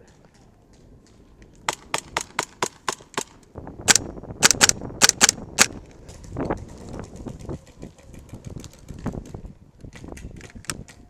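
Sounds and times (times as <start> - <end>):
airsoft guns firing: 1.7 - 5.7.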